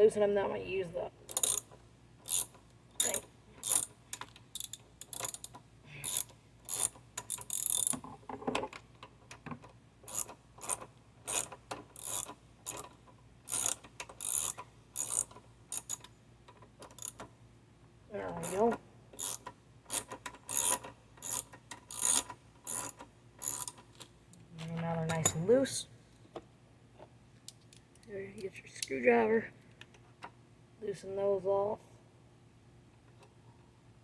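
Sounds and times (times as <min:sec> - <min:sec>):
socket ratchet clicking: 0:01.3 - 0:08.0, 0:10.1 - 0:16.2, 0:16.8 - 0:17.3, 0:18.4 - 0:24.1.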